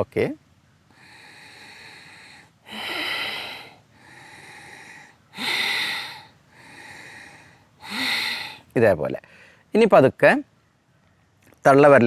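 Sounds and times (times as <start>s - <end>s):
slow hissing breaths: 0.9s - 9.7s.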